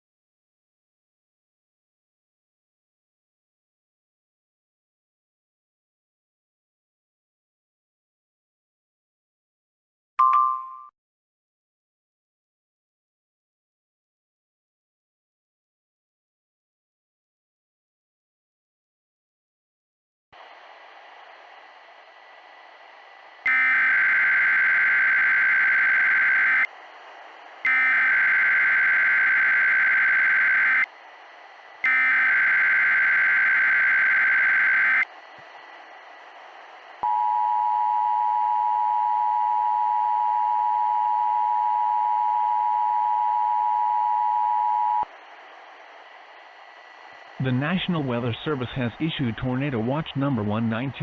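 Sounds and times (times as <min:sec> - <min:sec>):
faint radio hiss: 0:20.4 - 0:23.5, 0:45.1 - 0:51.0.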